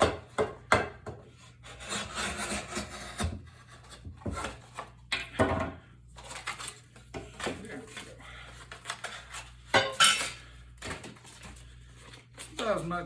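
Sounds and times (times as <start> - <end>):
knife sawing through cardboard tube: 1.6 - 4.7.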